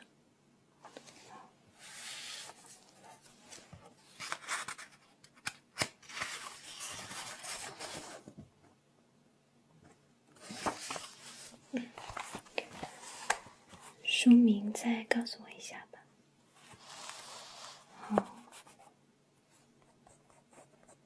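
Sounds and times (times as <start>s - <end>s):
paper rustling and scratching: 0.9s - 8.3s, 10.4s - 14.0s, 16.6s - 18.8s.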